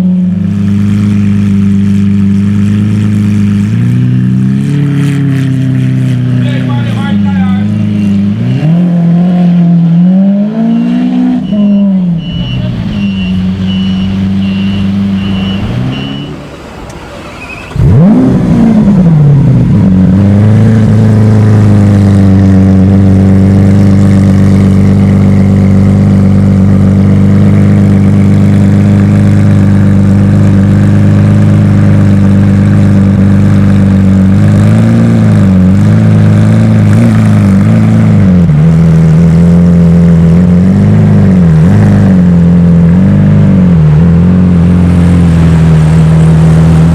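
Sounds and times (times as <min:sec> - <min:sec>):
sports car engine revving: 0:00.0 - 0:17.0, 0:17.7 - 0:46.9
car engine idling: 0:05.6 - 0:08.5, 0:10.9 - 0:46.9.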